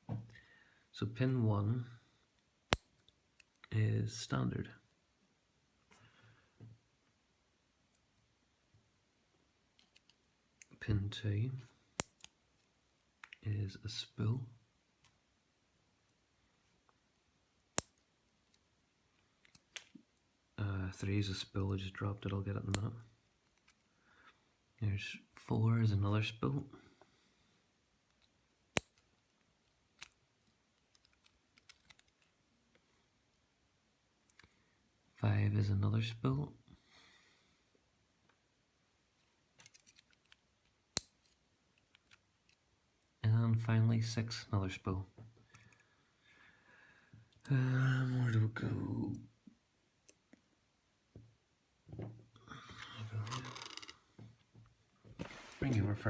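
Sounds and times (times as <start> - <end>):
light ticks of small lock parts: 2.3 - 3.7, 9.7 - 10.7, 12.0 - 13.4, 17.7 - 20.0, 22.7 - 23.9, 28.1 - 33.5, 39.2 - 43.2
scraping and rustling: 55.0 - 56.0.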